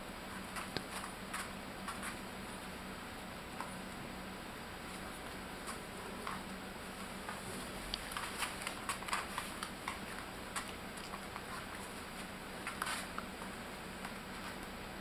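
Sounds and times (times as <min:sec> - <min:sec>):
faint steady hum: 0:00.0 - 0:15.0
puppies clicking and scuffling: 0:00.3 - 0:02.2, 0:04.9 - 0:14.7.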